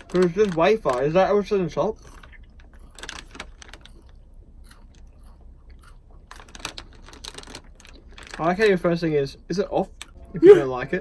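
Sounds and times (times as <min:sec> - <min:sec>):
crunchy chewing: 0:02.0 - 0:08.7.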